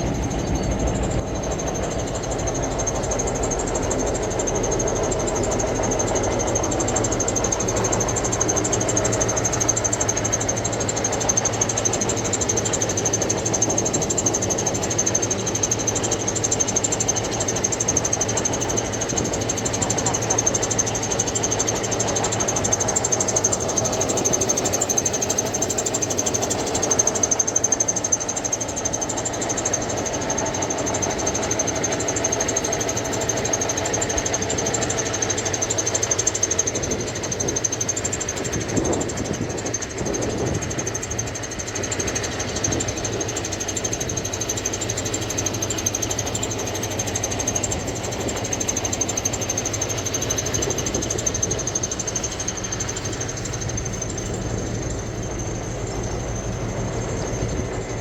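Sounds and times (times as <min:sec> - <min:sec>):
water pump motor running: 0:00.0 - 0:58.0.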